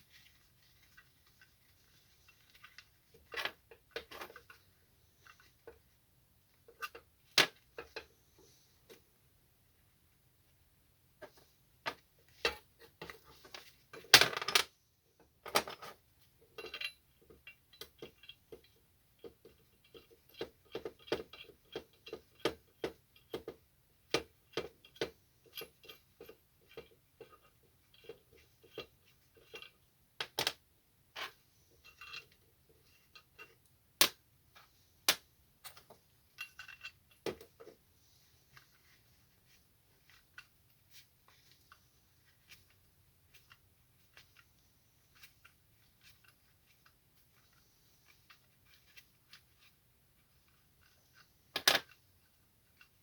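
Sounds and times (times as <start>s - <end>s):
metal parts clinking: 35.7s - 37.2s.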